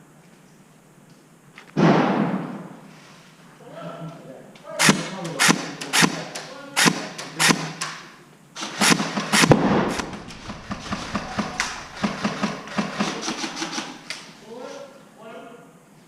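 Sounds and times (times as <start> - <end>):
airsoft guns firing: 4.8 - 14.3.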